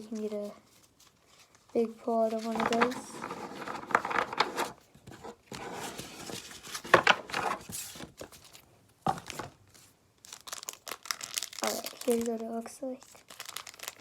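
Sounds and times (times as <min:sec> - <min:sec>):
wrapper tearing and crinkling: 0:10.2 - 0:14.0.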